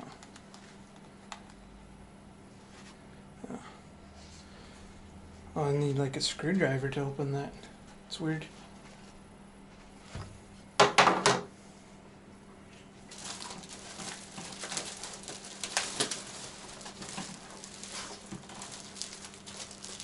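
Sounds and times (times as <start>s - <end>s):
plastic crinkling and rustling: 13.1s - 20.0s.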